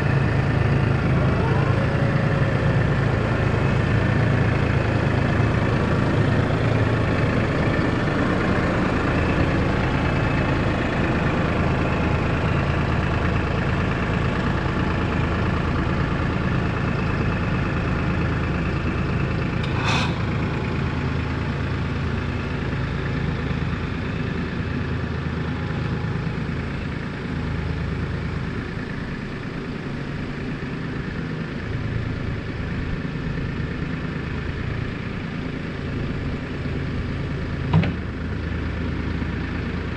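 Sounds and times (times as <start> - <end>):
backhoe engine running: 0.0 - 39.9
sharp metal clank: 19.6 - 20.5.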